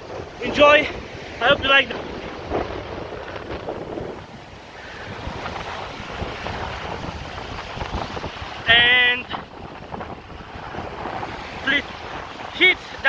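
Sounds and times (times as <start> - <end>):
surf breaking: 0.0 - 13.0
wind buffeting microphone: 0.0 - 13.0.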